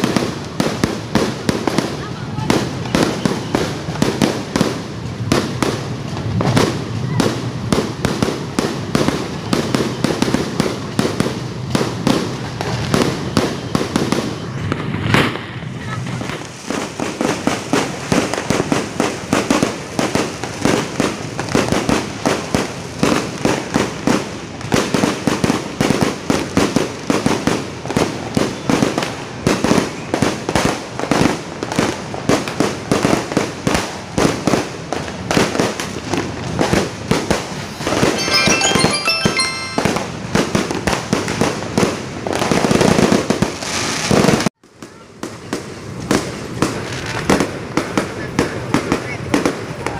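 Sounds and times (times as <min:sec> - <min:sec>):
firecrackers banging: 0:00.0 - 0:44.5
high steady tones: 0:38.2 - 0:40.5.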